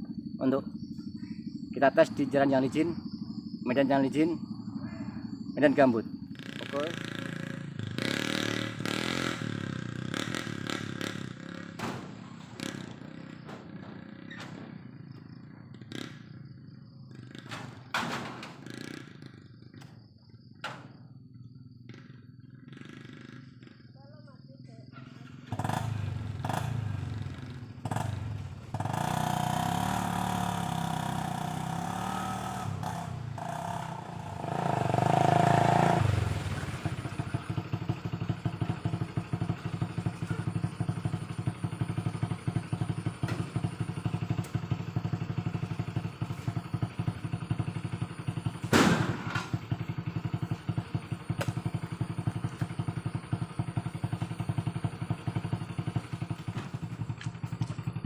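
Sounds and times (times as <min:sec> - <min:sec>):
motorcycle engine revving: 0:00.0 - 0:58.0
sharp thump: 0:11.8 - 0:12.2, 0:48.6 - 0:49.6.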